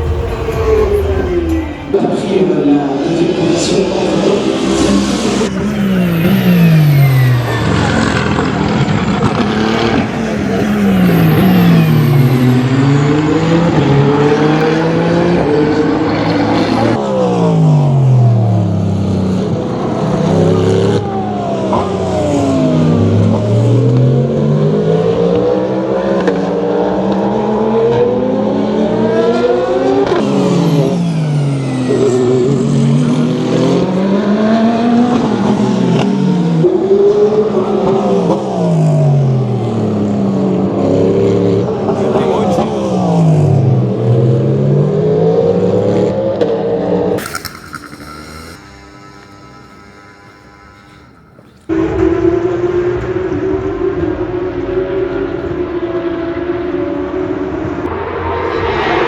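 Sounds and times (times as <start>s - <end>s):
racing cars passing at speed: 0.0s - 49.1s, 51.6s - 59.0s.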